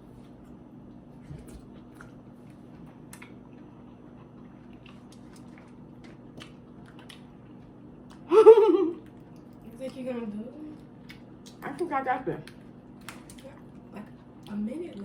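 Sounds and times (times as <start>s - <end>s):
wet chewing: 1.2s - 8.3s, 10.7s - 15.0s.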